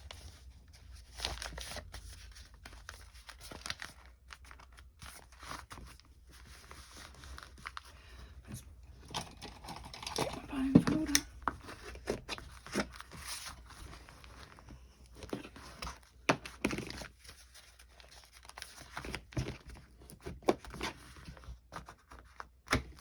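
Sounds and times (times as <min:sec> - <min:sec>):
paper rustling and crinkling: 0:00.0 - 0:23.0.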